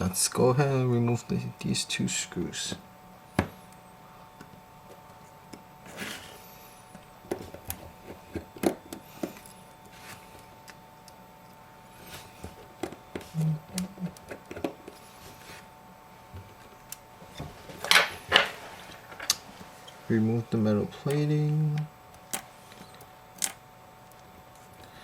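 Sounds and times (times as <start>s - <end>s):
faint steady whine: 0.0s - 25.0s.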